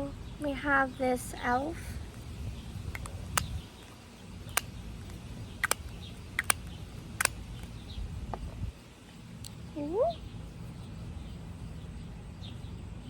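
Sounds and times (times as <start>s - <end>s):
low steady rumble: 0.0s - 13.0s
plastic tubes and caps clicking: 2.9s - 7.7s.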